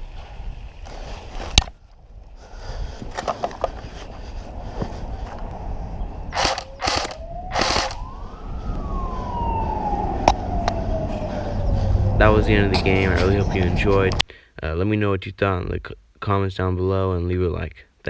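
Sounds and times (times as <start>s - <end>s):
loud bursts of noise: 6.3s - 8.1s
siren winding up and down: 6.3s - 12.7s.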